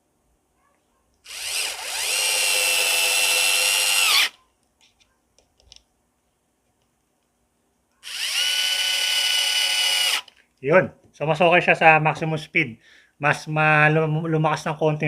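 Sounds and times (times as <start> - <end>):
cordless screwdriver motor whining: 1.3 - 4.4, 8.0 - 10.3.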